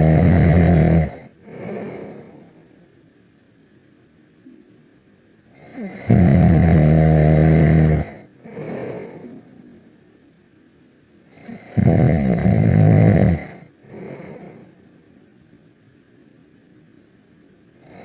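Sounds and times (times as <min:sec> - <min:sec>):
loud snoring: 0:00.0 - 0:02.4, 0:05.6 - 0:09.3, 0:11.4 - 0:14.7.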